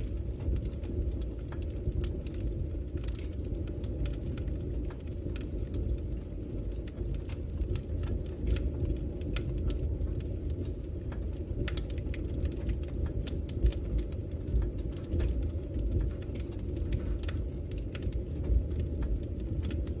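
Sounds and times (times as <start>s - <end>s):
burning wood crackling and popping: 0.0s - 20.0s
low rumble of flame: 0.0s - 20.0s.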